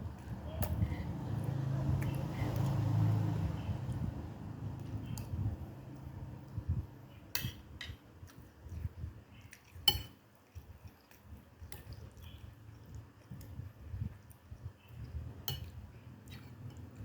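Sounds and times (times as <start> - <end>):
cutlery clinking on plates: 9.8 - 10.2.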